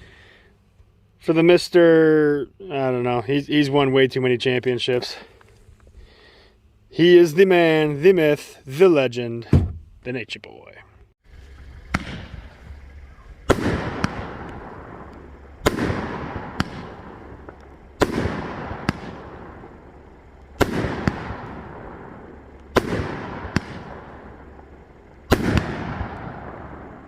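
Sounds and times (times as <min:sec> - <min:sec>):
firework bangs with crackle: 0:11.5 - 0:27.0.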